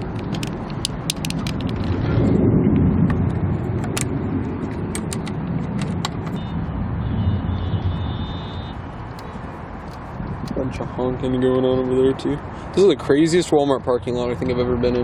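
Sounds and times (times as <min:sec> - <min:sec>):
vehicle low rumble: 0:00.0 - 0:15.0
car horn: 0:06.3 - 0:08.9.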